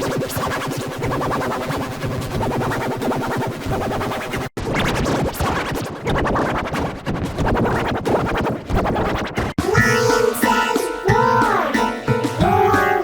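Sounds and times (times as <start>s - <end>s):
distorted children's song: 9.6s - 13.0s.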